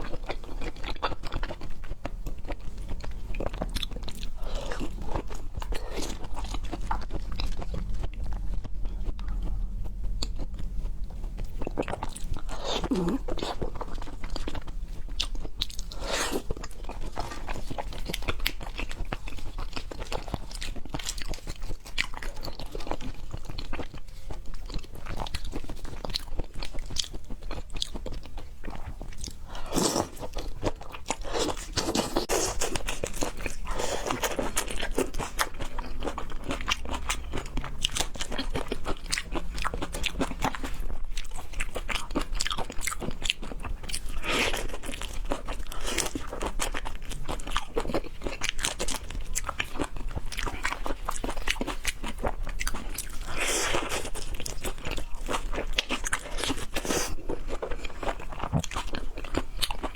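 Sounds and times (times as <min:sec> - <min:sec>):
chewing and crunching food: 0:00.0 - 0:59.9.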